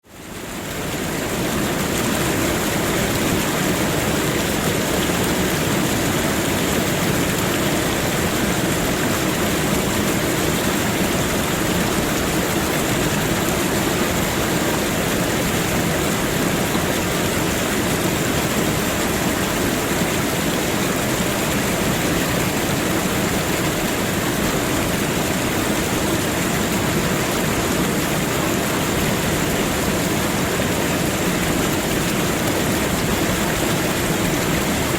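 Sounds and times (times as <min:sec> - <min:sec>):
waterfall rushing: 0:00.1 - 0:34.9.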